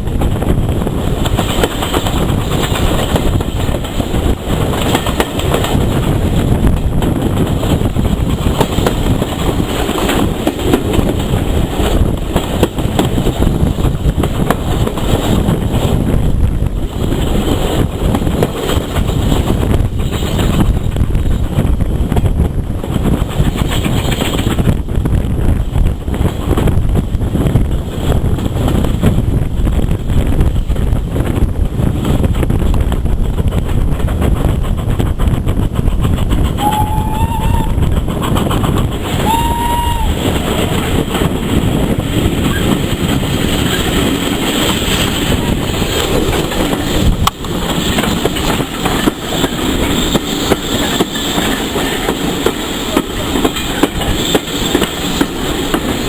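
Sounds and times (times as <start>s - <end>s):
train rumbling with rail clatter: 0.0s - 56.0s
train whistle toots: 36.6s - 37.9s, 39.1s - 40.4s.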